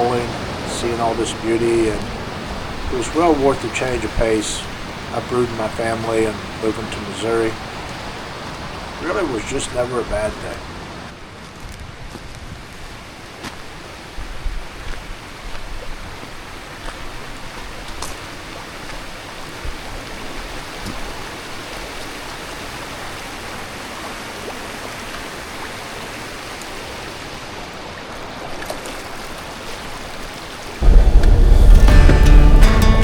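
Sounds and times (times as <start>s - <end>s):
creek flowing over rocks: 0.0s - 11.2s, 13.1s - 30.9s
low thuds: 30.8s - 33.0s.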